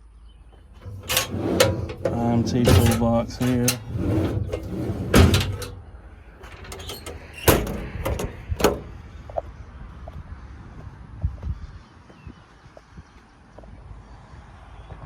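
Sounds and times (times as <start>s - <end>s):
metal toolbox door banging: 0.8s - 5.8s, 6.4s - 9.0s
door knocks and latch clicks: 6.5s - 9.0s.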